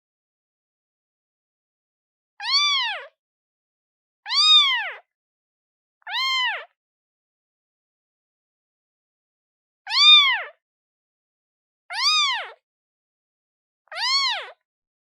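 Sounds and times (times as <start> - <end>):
newborn kitten meowing: 2.4 - 3.2, 4.3 - 5.1, 6.1 - 6.8, 9.9 - 10.6, 11.9 - 12.6, 13.9 - 14.6.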